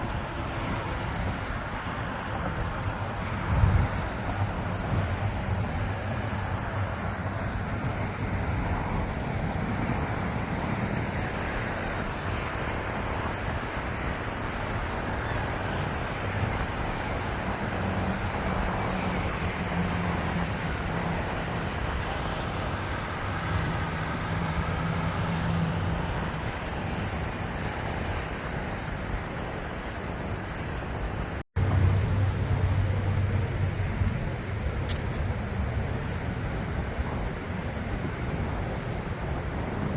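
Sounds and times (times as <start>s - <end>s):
cars passing: 0.0s - 39.9s
low engine hum: 16.2s - 39.9s.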